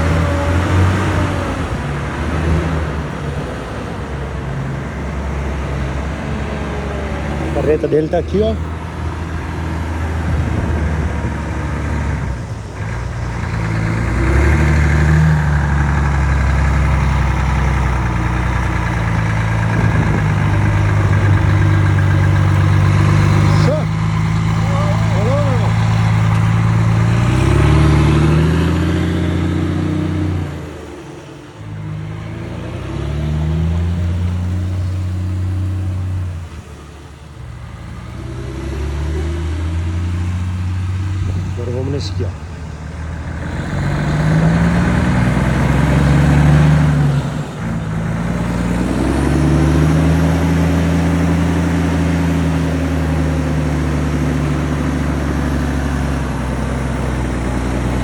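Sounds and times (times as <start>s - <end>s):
truck diesel engine running: 0.0s - 58.0s.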